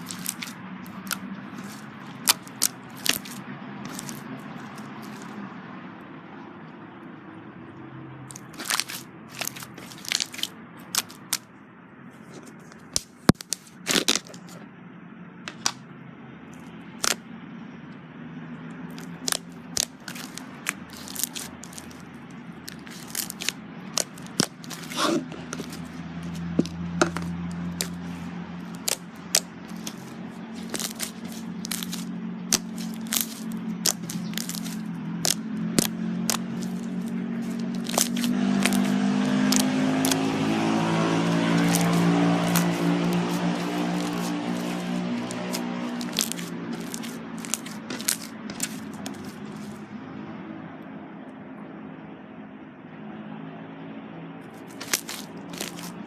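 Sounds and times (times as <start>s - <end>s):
slime crackling and popping: 0.0s - 5.3s, 8.3s - 11.4s, 13.0s - 14.4s, 18.9s - 22.0s, 22.7s - 28.0s, 28.7s - 40.5s, 41.4s - 49.8s, 54.7s - 56.0s.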